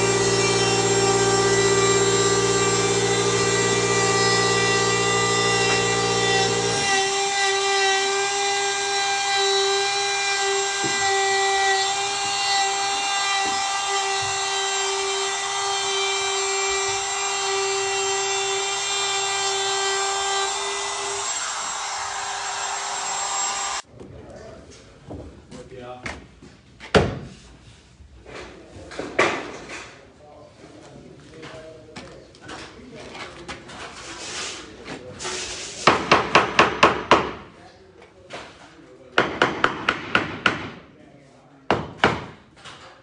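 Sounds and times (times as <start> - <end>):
high-pitched power tool whine: 0.0 - 23.8
power tools humming: 0.0 - 23.8
deep-pitched power tool: 0.0 - 23.9.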